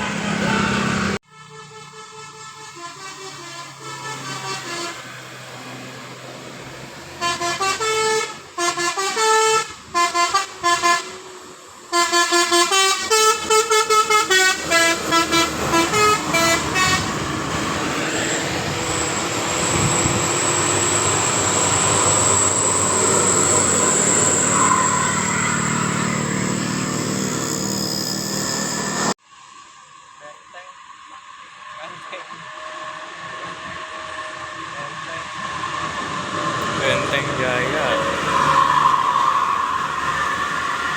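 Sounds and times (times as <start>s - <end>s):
bus musical horn tune: 0.5s - 5.4s, 7.1s - 18.2s.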